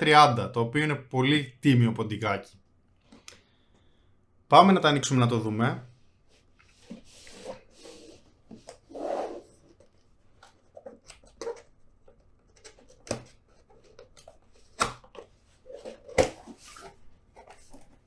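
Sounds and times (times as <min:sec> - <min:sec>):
cardboard box packaging rustling: 0:06.6 - 0:18.0.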